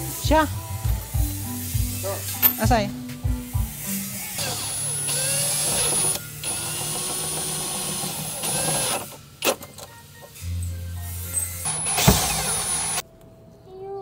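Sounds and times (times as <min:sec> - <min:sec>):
power drill whining: 0:03.8 - 0:09.2, 0:11.6 - 0:13.0.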